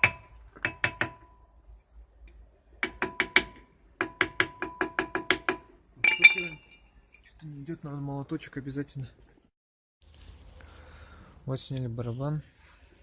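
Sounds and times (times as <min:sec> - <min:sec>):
hammer tapping metal brake drum: 0:00.0 - 0:01.3, 0:02.8 - 0:06.8.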